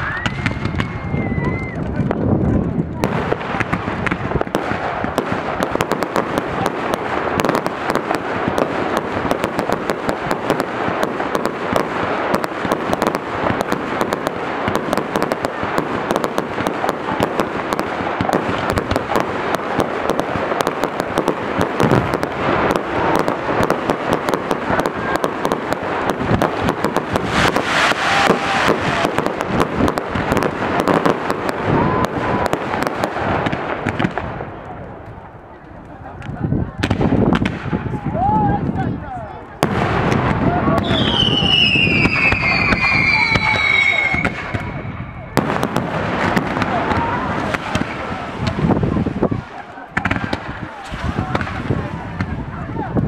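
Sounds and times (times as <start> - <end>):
faint firework whistling: 0.0 - 1.8, 40.8 - 45.4
fireworks bangs and crackling: 0.0 - 53.0.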